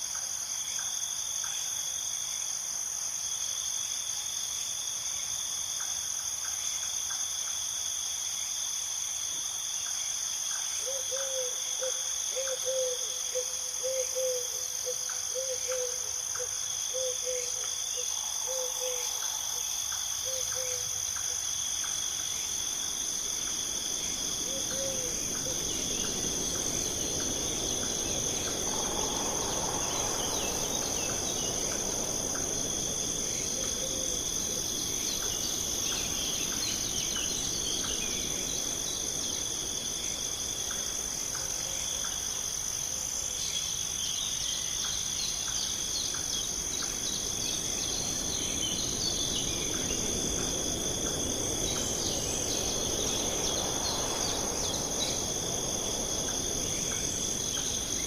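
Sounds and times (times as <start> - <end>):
insects chorus: 0.0 - 58.0
low rushing background: 22.6 - 41.0.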